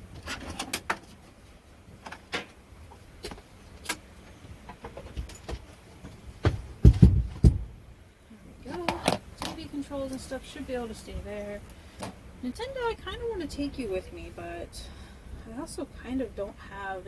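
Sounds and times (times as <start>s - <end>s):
heavy thumps on floor: 6.4s - 7.8s.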